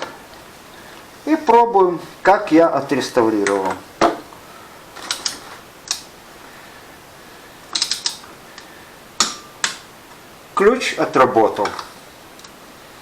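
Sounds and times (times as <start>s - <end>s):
ratcheting torque wrench clicking: 7.7s - 8.2s.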